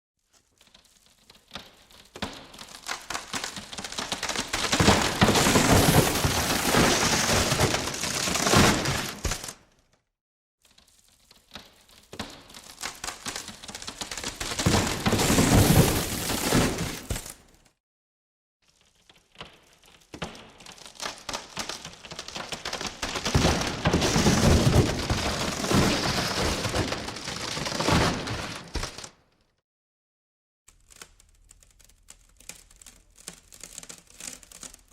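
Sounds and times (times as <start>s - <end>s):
faint crackles: 0.2s - 9.5s, 10.6s - 16.4s
plywood splintering cracks: 0.6s - 10.0s, 10.6s - 17.6s, 18.7s - 29.3s, 30.7s - 34.9s.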